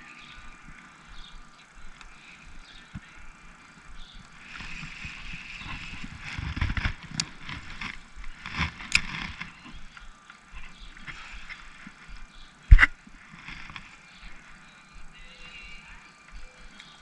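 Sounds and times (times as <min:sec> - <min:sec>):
sharp handling clicks: 0:06.6 - 0:09.5.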